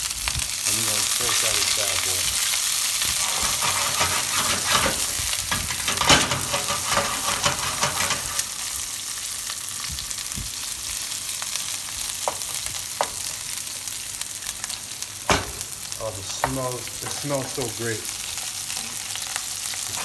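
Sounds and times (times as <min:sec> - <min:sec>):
food sizzling in a pot: 0:00.0 - 0:20.0
spoon scraping against a pot: 0:03.2 - 0:08.5.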